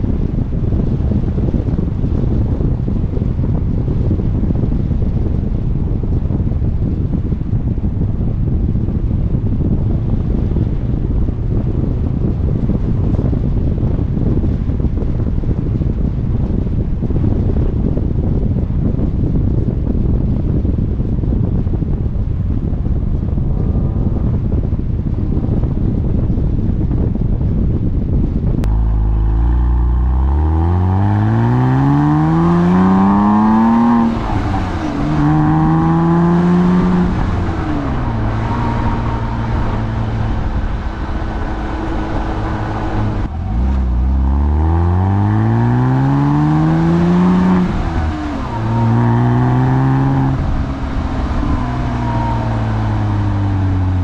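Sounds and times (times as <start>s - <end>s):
wind noise: 0.0s - 54.0s
car engine accelerating: 28.6s - 54.0s.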